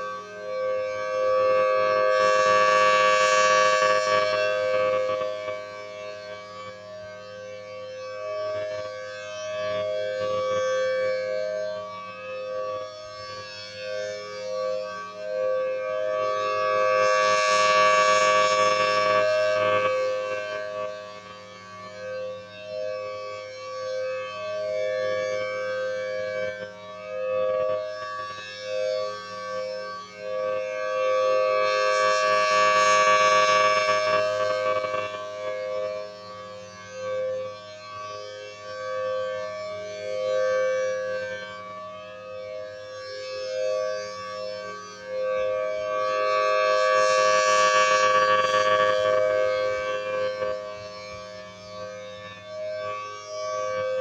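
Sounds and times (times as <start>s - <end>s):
two-note warning siren wail: 29.6s - 37.6s, 44.3s - 52.6s.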